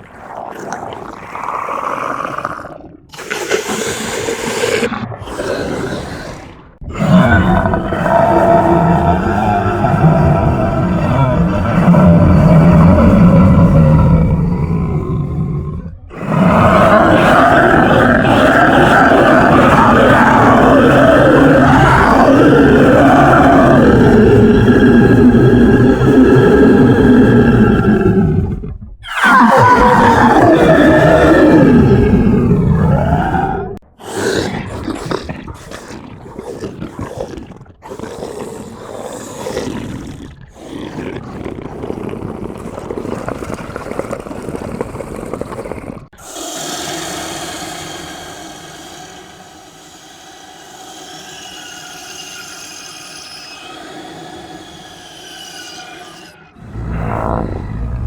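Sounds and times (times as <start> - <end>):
monster-like roar: 0.0 - 58.0
eerie drone with wavering tones: 46.4 - 58.0.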